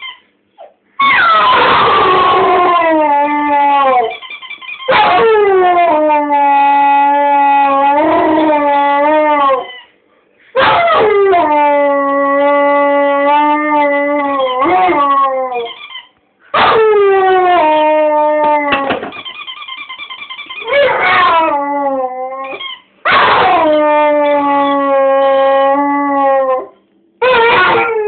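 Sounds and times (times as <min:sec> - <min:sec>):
dog howling: 0:01.0 - 0:09.9, 0:10.6 - 0:15.8, 0:16.6 - 0:19.1, 0:20.4 - 0:28.0.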